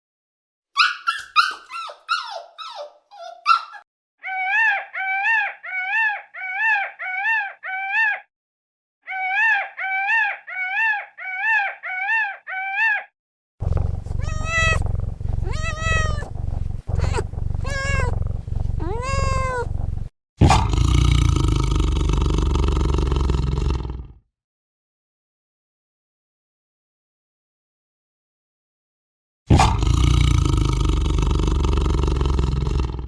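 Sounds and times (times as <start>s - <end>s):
high animal squeaks: 0.8s - 3.8s, 13.6s - 20.1s
animal yelping calls: 0.8s - 8.2s, 13.6s - 20.1s
low drawn-out animal calls: 13.6s - 20.1s
low rumble: 13.6s - 20.1s.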